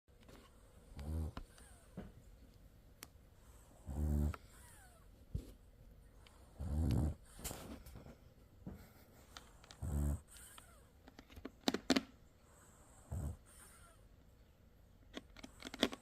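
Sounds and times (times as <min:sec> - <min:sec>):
dog snoring: 0:00.9 - 0:01.9, 0:03.4 - 0:05.0, 0:06.2 - 0:07.6, 0:09.8 - 0:10.8, 0:12.4 - 0:14.0.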